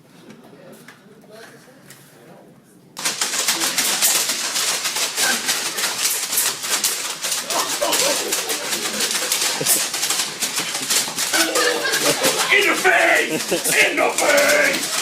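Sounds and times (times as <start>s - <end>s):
faint voices: 0.1s - 15.0s
toy blasters firing darts: 3.0s - 15.0s.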